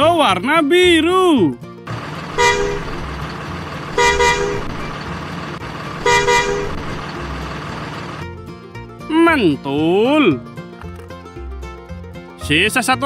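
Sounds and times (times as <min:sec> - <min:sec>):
low engine rumble: 0:01.9 - 0:08.4
bus horn two-tone toots: 0:02.2 - 0:03.2, 0:03.9 - 0:05.1, 0:06.0 - 0:07.2.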